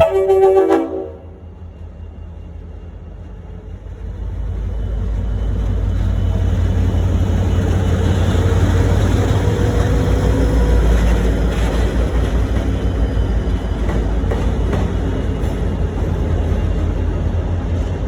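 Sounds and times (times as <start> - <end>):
diesel locomotive engine rumble: 0.0 - 18.0.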